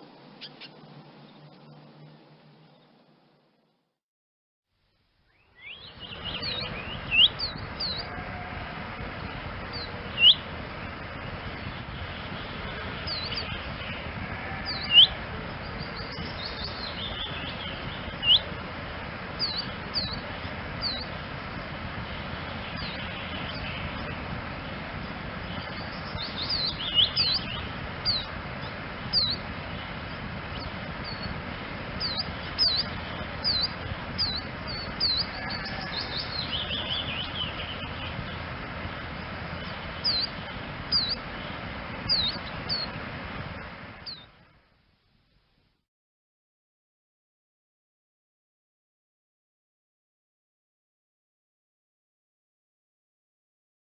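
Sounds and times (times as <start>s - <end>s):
bird calling and twittering: 0.0s - 1.8s, 5.3s - 8.6s, 9.2s - 10.6s, 11.5s - 18.6s, 19.3s - 43.0s, 44.0s - 44.4s
background hiss: 4.8s - 45.8s.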